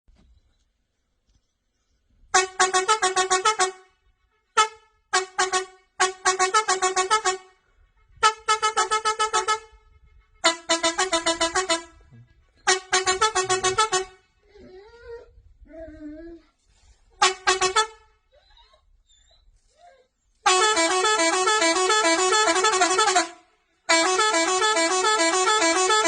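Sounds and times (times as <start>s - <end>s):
musical air horn melody: 2.3s - 14.4s, 17.2s - 18.2s, 20.4s - 26.0s.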